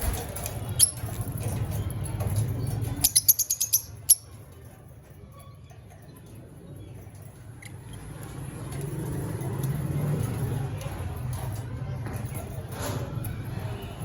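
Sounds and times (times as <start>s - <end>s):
low rumbling background noise: 0.0s - 14.0s
lovebirds chirping: 2.8s - 4.4s.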